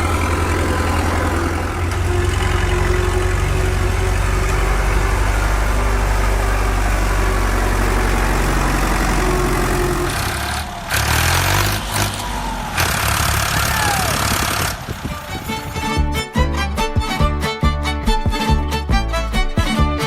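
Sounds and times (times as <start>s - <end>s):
engine idling with low hum: 0.0s - 15.4s.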